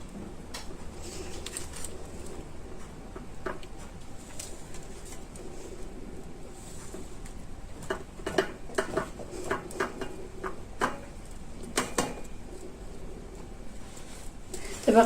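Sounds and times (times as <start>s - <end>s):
kitchenware clicks and taps: 7.8s - 11.1s, 11.7s - 12.3s.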